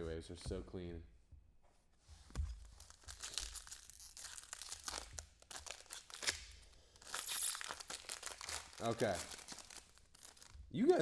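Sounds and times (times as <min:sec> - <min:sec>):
card pack wrappers crinkling: 0:02.8 - 0:10.7.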